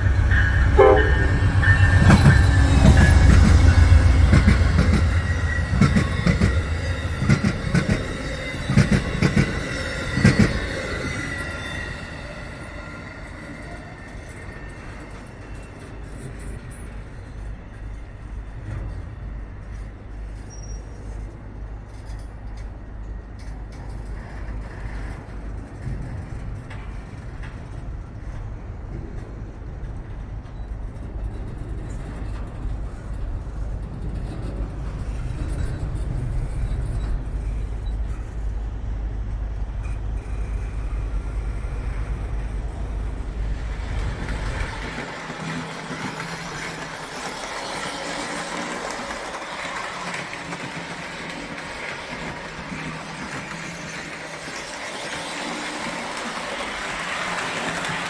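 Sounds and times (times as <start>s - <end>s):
toy train motor hum: 43.2s - 58.0s.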